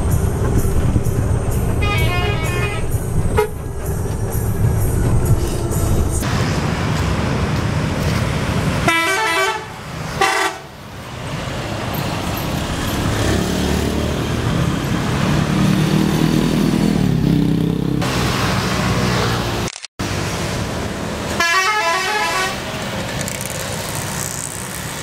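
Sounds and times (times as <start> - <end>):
bus engine drone: 0.0 - 25.0
road noise: 0.0 - 25.0
bus horn playing melody: 1.8 - 3.6, 8.8 - 10.7, 21.4 - 22.7.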